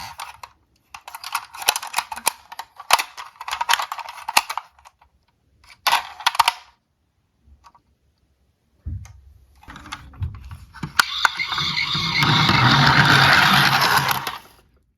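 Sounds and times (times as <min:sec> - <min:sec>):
small wheels rolling on plastic: 0:10.9 - 0:14.6
toy cars clinking together: 0:11.0 - 0:14.5.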